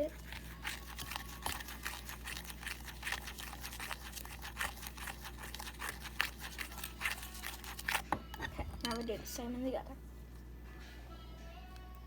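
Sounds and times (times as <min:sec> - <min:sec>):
powder being stirred in a container: 0:00.0 - 0:08.6.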